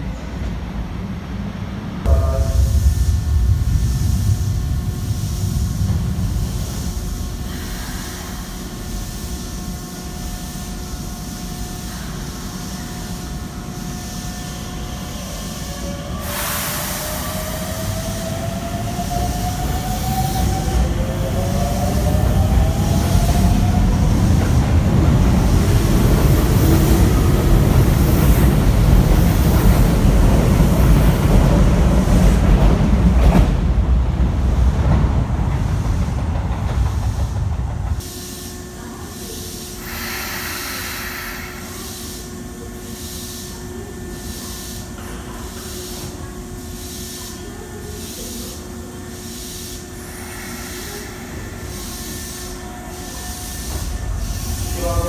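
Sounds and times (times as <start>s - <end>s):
train wheels rumbling on rail: 0.0s - 55.0s
steady hum: 2.1s - 11.0s.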